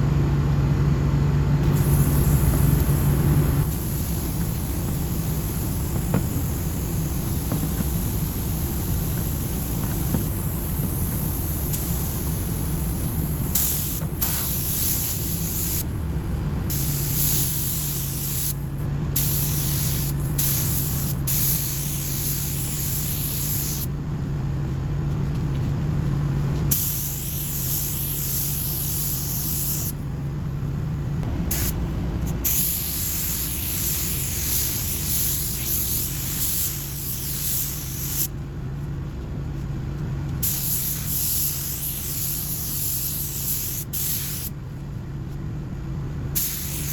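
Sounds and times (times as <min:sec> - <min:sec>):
steady low hum: 0:00.0 - 0:46.9
compressed air gun hissing: 0:01.6 - 0:23.9, 0:26.7 - 0:30.0, 0:31.3 - 0:38.3, 0:40.4 - 0:44.5, 0:46.4 - 0:46.9.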